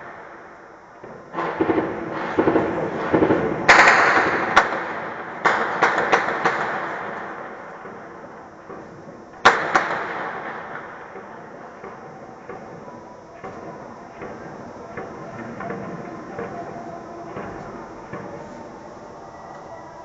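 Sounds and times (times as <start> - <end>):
gunshots: 1.3 - 8.1, 9.4 - 11.2.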